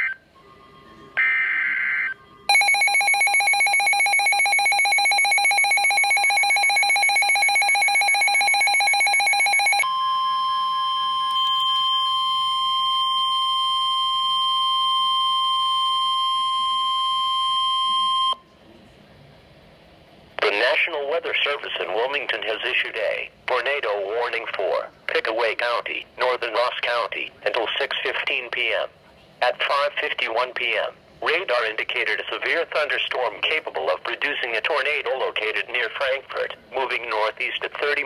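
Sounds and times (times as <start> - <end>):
steady single-pitch alarm tone: 0.0 - 18.4.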